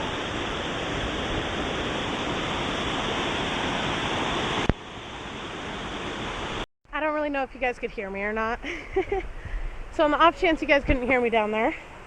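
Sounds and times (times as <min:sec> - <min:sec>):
waterfall rushing: 0:00.0 - 0:06.6.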